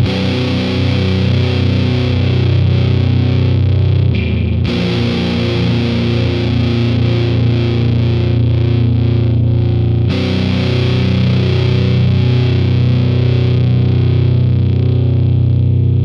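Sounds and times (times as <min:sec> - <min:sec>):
distorted electric guitar: 0:00.0 - 0:16.0.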